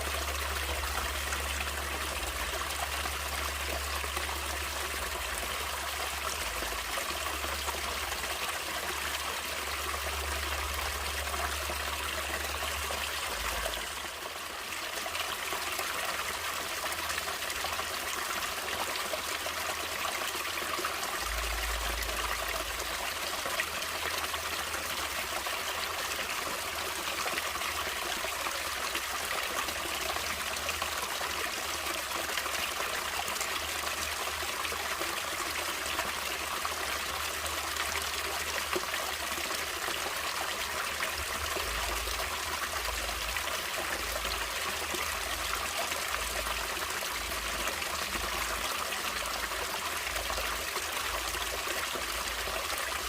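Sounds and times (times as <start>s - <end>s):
stream water flowing: 0.0s - 53.0s.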